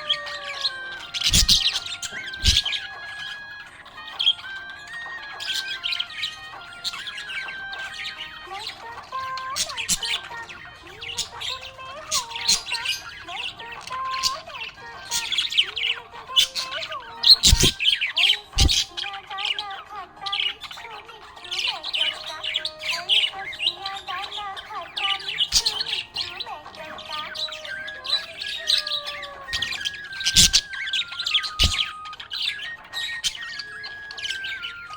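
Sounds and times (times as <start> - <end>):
budgerigars chirping and warbling: 0.0 - 34.9.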